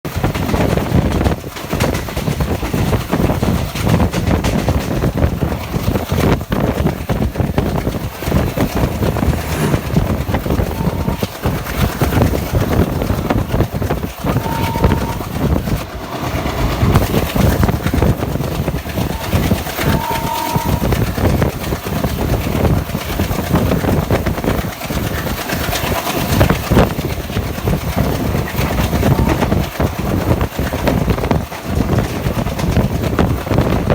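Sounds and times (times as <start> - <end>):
diesel locomotive engine chugging: 0.1 - 33.9
train wheels clattering on rails: 0.1 - 33.9
train horn toots: 8.2 - 11.9, 14.2 - 17.8, 18.8 - 21.6, 28.5 - 29.7.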